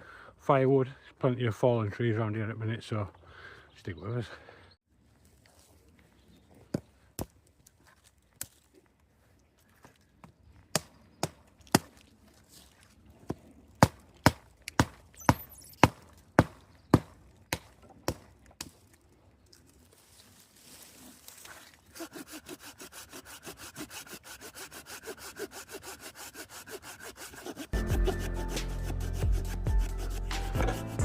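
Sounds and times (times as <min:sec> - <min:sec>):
axe chopping wood: 0:13.3 - 0:18.7.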